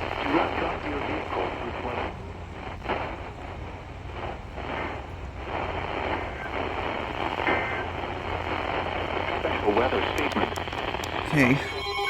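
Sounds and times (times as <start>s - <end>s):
radio static hiss: 0.0s - 12.0s
steady low hum: 0.0s - 12.0s.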